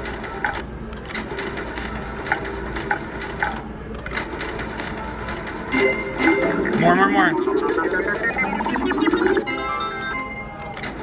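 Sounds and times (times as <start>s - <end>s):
short electronic beeps: 5.7s - 10.8s
slot machine reels clicking: 5.7s - 11.0s
bright chime: 5.8s - 6.8s.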